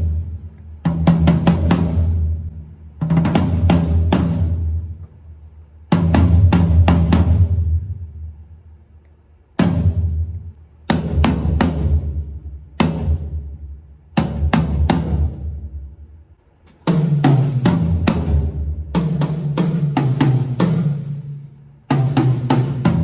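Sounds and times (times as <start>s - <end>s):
deep ringing drums: 0.0s - 5.1s, 5.9s - 8.0s.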